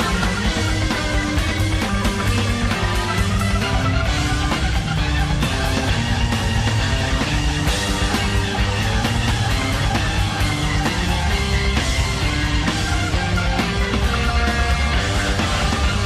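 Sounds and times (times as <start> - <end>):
electric guitar: 0.0 - 16.0
rock band playing live: 0.0 - 16.0.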